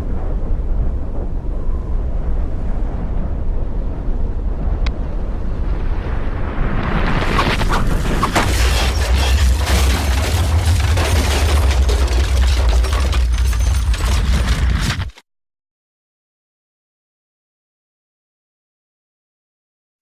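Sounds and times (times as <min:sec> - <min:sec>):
volcano deep rumble: 0:00.0 - 0:15.1
crackling: 0:04.8 - 0:15.2.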